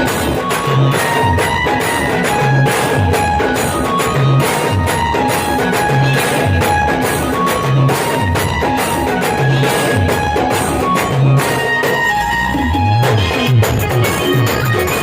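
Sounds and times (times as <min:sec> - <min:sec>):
deep drum beat: 0:00.0 - 0:11.4
sharp percussion strokes: 0:00.0 - 0:15.0.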